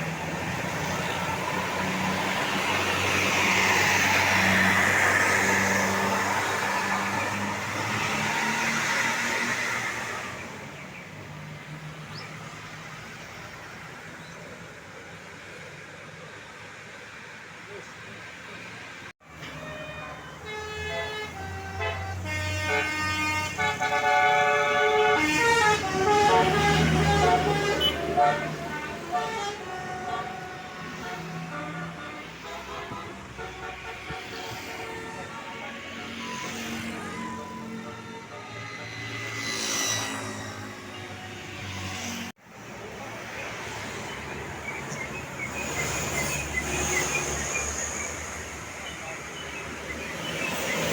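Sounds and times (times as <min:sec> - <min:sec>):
vehicles driving past: 0:00.0 - 0:50.9
bus multi-tone horn playing tune: 0:19.3 - 0:42.1.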